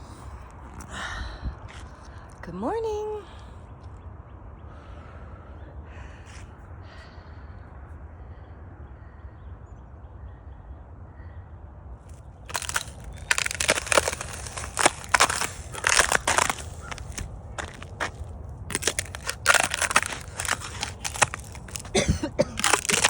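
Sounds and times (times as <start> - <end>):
ice cracking underfoot: 12.5 - 23.0.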